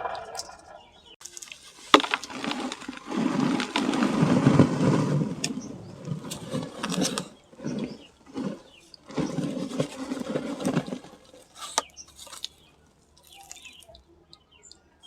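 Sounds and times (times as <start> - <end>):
sharp crack: 0.0 - 7.4
sand-cement chunks crumbling: 0.0 - 14.0.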